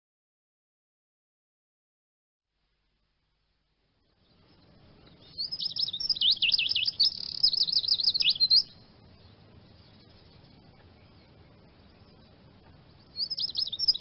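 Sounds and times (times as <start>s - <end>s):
bird twittering song: 4.0s - 14.0s.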